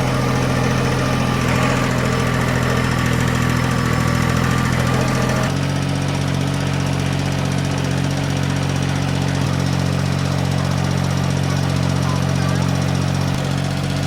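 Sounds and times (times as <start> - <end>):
engine running steadily: 0.0 - 14.0.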